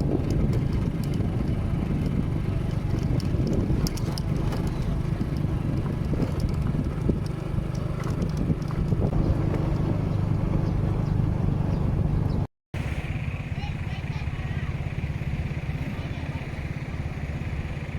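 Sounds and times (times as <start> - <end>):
wind noise: 0.0 - 12.4
engine running steadily: 0.0 - 17.9.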